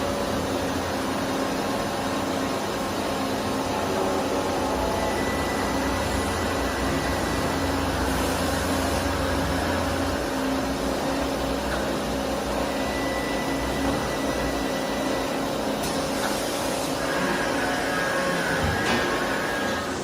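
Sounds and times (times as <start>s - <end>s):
lathe whirring and humming: 0.0s - 20.0s.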